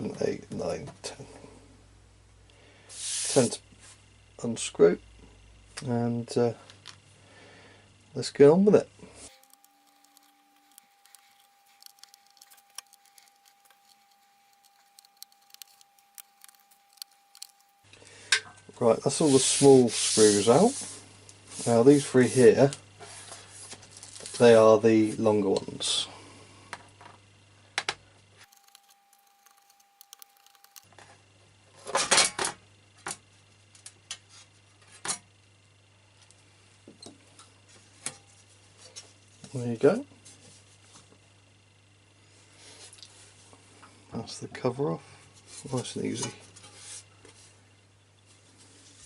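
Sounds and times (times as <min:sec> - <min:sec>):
screwdriver clicking on screws: 0:09.4 - 0:17.6, 0:28.5 - 0:30.9.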